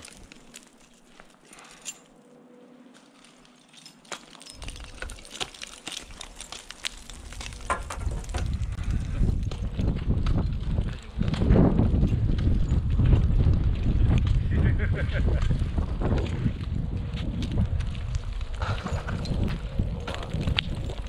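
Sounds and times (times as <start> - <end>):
wind buffeting microphone: 6.0 - 21.0.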